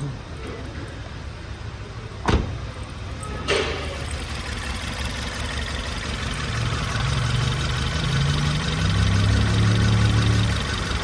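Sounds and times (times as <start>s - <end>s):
engine misfiring: 3.2s - 11.0s.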